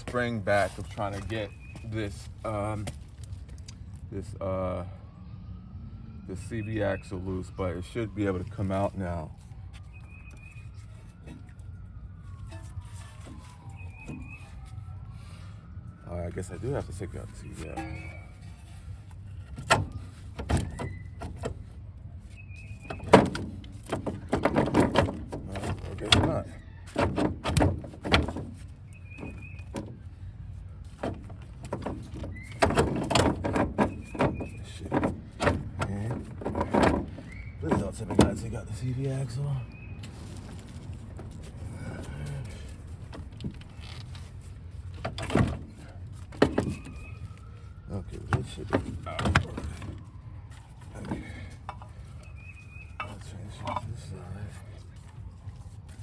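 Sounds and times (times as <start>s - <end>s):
metal knocks and clanks: 17.5s - 18.4s, 22.8s - 30.0s, 31.0s - 38.6s
metal clunk with scrape: 52.9s - 54.6s.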